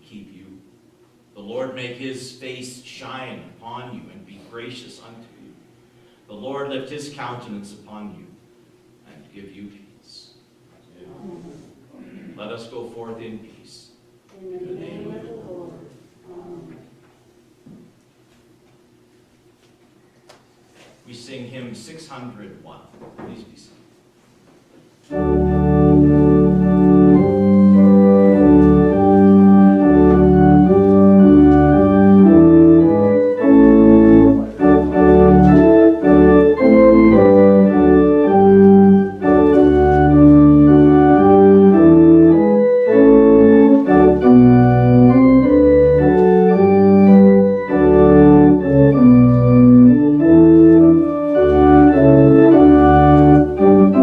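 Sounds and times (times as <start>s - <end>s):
church organ playing a hymn: 25.1s - 54.0s.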